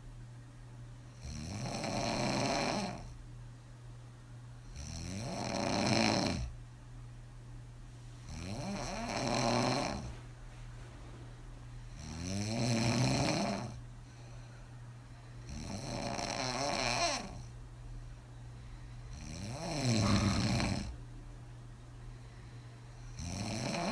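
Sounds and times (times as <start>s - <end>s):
woman snoring: 1.2s - 3.1s, 4.8s - 6.5s, 8.3s - 10.1s, 12.0s - 13.8s, 15.5s - 17.4s, 19.1s - 21.0s, 23.2s - 23.9s.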